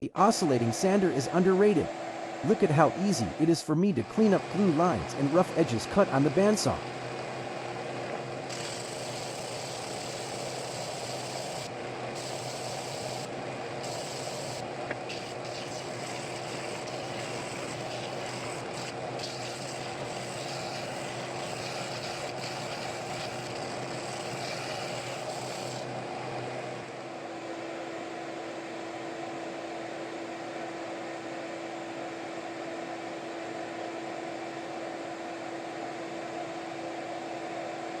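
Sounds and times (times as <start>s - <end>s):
sander motor hum: 0.2s - 27.3s
wood sanding hiss: 8.5s - 25.8s.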